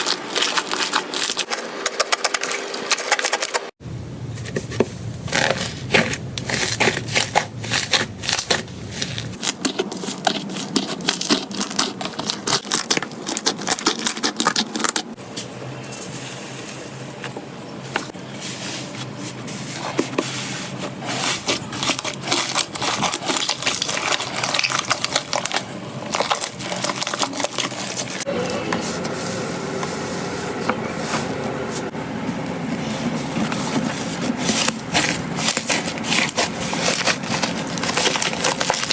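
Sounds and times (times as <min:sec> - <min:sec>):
slime crackling and popping: 0:21.8 - 0:28.2.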